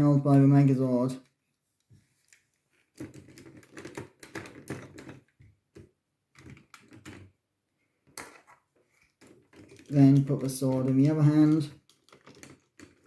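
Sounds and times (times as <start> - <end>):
plastic toy parts clicking: 2.3 - 7.3, 9.2 - 13.0.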